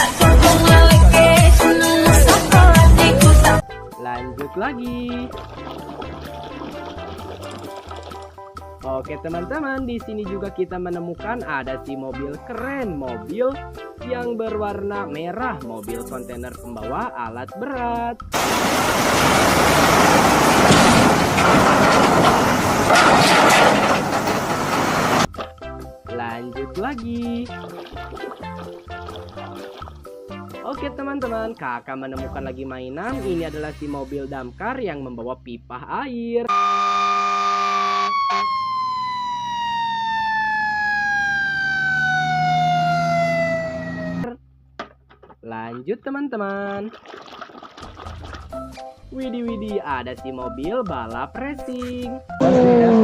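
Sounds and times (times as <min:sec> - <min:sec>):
water spraying on plastic: 0:18.4 - 0:21.3
fire truck siren wailing: 0:36.5 - 0:44.3, 0:52.4 - 0:53.0.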